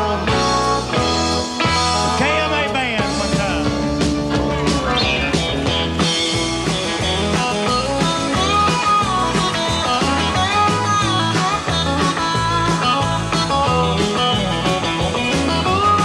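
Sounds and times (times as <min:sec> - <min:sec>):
country band playing: 0:00.0 - 0:16.0
lead guitar with string bends: 0:00.0 - 0:16.0.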